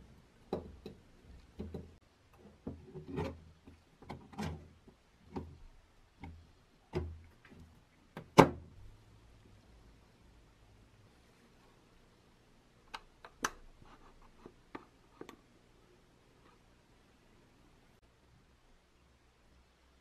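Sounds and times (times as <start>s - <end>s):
parts knocking and clicking: 0.4s - 8.6s.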